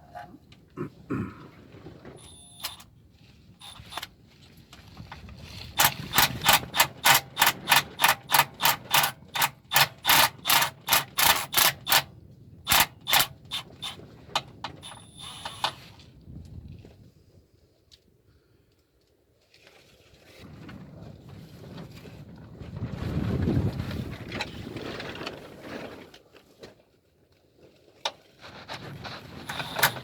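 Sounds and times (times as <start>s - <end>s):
hand ratchet clicking: 3.6s - 4.1s, 5.8s - 12.1s, 12.7s - 14.0s, 29.5s - 30.0s.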